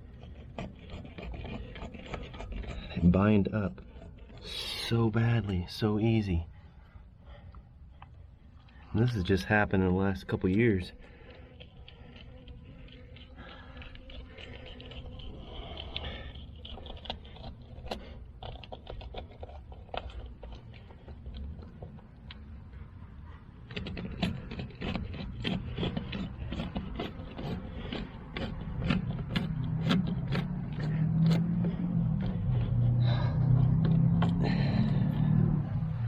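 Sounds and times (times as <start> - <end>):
low engine-like rumble: 19.4 - 36.0
hose clamp clicking and scraping: 23.6 - 35.2.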